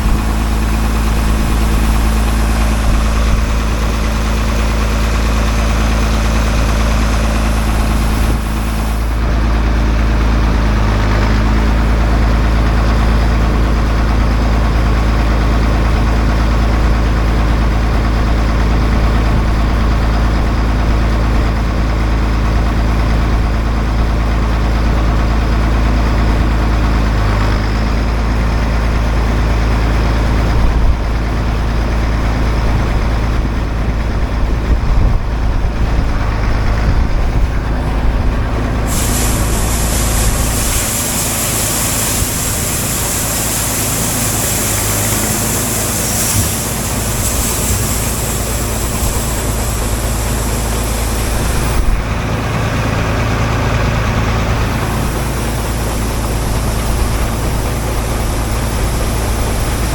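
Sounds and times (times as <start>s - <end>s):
high hiss: 0.0s - 9.4s, 38.9s - 53.0s, 54.6s - 59.9s
farm machinery engine droning: 0.0s - 59.9s.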